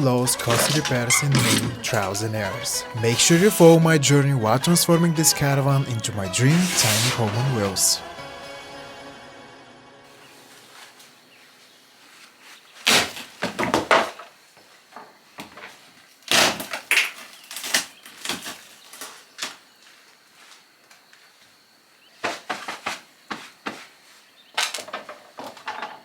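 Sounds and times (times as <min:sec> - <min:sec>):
background music: 0:00.0 - 0:10.7.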